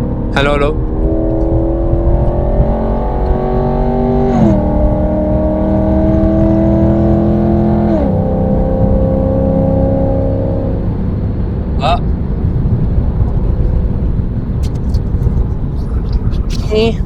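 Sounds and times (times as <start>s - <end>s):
car engine accelerating: 0.0s - 17.0s.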